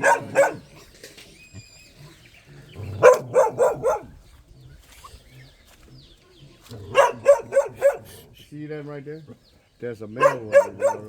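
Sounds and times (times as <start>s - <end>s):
dog barking: 0.0s - 0.7s, 3.0s - 4.2s, 6.8s - 8.2s, 10.2s - 11.0s.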